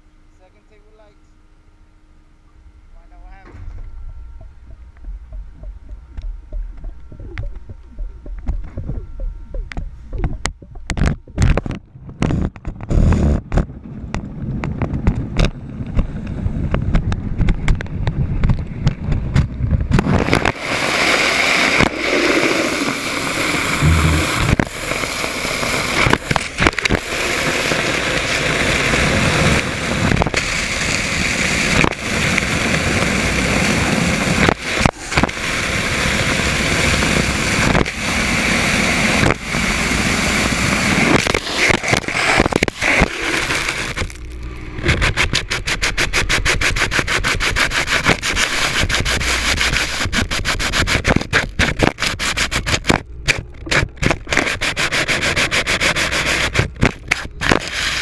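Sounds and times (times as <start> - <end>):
low rumbling inside pipe: 1.8 - 21.0, 21.6 - 57.4
loud rushing hiss: 20.5 - 26.0
sharp knocks and scrapes: 23.8 - 24.7, 41.1 - 58.0.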